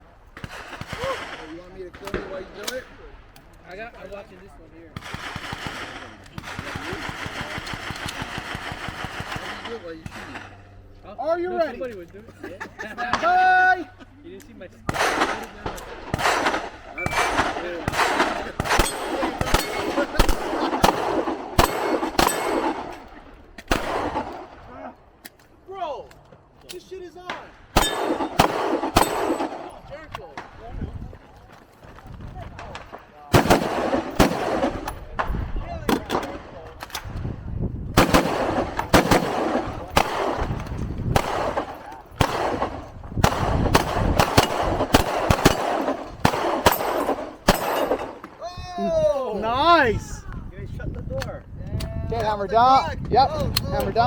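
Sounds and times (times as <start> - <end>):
gunshots with ringing echo: 14.9 - 23.1, 23.7 - 24.6, 27.7 - 29.8, 33.3 - 35.3, 38.0 - 48.3.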